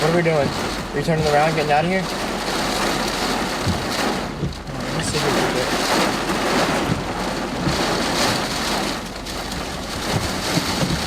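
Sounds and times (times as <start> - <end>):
heavy rain on car roof: 0.0 - 11.0.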